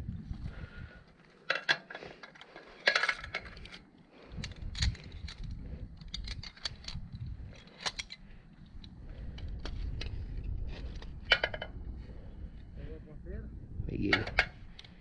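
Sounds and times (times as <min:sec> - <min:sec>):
steady low rumble: 0:00.0 - 0:01.3, 0:02.5 - 0:15.0
small metallic clicks and clinks: 0:01.5 - 0:10.2.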